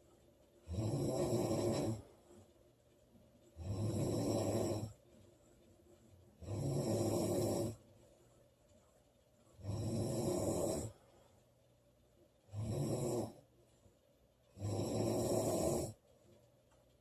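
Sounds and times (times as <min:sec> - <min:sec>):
woman snoring loudly: 0:00.7 - 0:02.0, 0:03.6 - 0:04.9, 0:06.4 - 0:07.8, 0:09.6 - 0:11.0, 0:12.5 - 0:13.4, 0:14.6 - 0:16.0.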